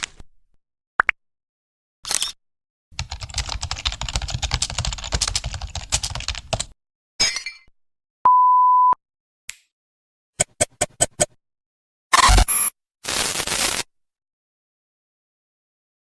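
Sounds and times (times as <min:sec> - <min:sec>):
keyboard typing: 0:03.0 - 0:06.7
one-tone censor bleep: 0:08.3 - 0:09.0.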